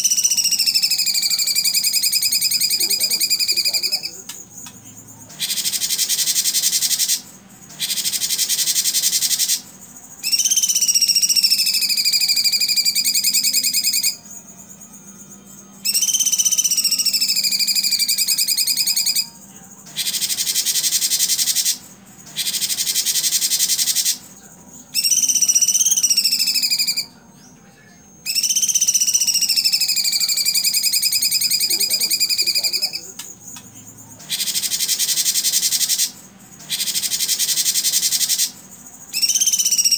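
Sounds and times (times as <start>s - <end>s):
wavering whistled notes: 0.0s - 4.2s, 10.2s - 19.4s, 24.9s - 33.6s, 39.1s - 39.9s
bird singing: 0.0s - 39.9s.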